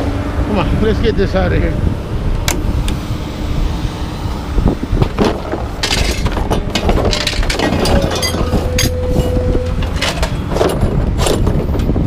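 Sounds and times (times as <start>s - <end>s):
truck engine rumbling: 0.0s - 12.0s
scrap metal clanking and scraping: 5.0s - 12.0s.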